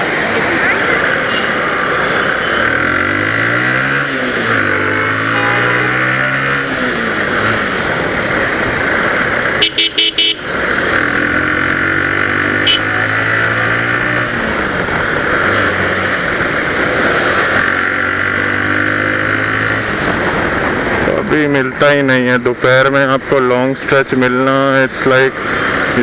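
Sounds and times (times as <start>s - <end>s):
motorcycle engine running: 0.2s - 19.3s
vehicle horn toots: 5.0s - 6.6s, 9.6s - 10.6s, 12.5s - 13.4s.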